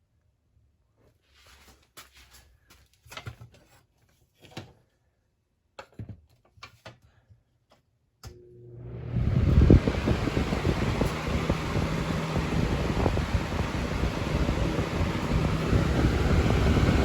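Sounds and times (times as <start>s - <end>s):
box fan motor humming: 8.3s - 17.0s
fan air rushing: 8.6s - 17.0s.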